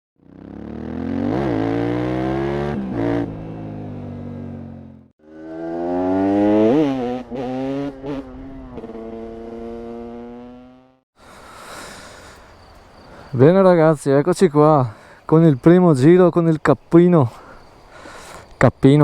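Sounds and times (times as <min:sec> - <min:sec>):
motorcycle engine revving: 0:00.2 - 0:11.0.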